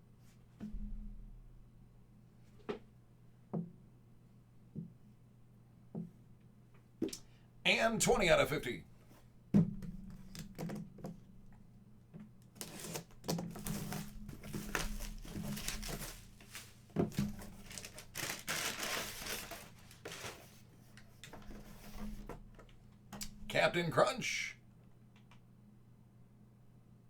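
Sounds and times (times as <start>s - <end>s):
packaging crinkling and rustling: 12.6s - 22.0s.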